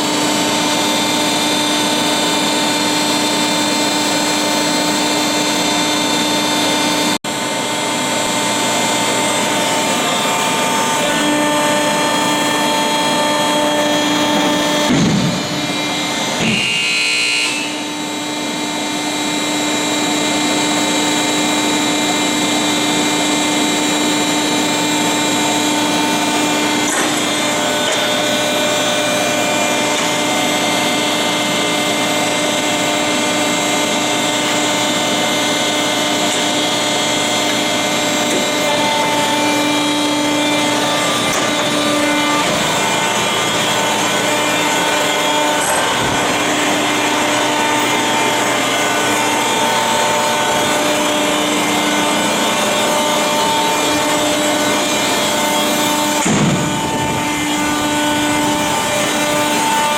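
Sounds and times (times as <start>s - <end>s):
baler machine hum: 0.0s - 59.9s
rushing grinding noise: 40.7s - 59.9s.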